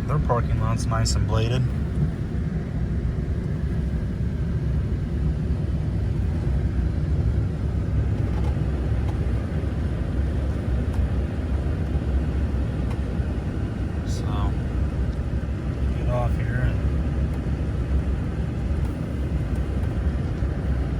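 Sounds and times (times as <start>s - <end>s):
vehicle engine rumble from cab: 0.0s - 20.9s.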